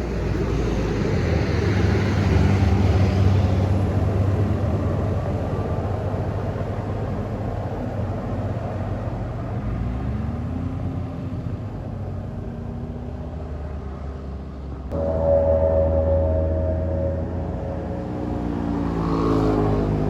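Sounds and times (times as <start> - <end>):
vehicle engine and road noise: 0.0 - 14.9
bus horn multiple tones: 15.0 - 19.0.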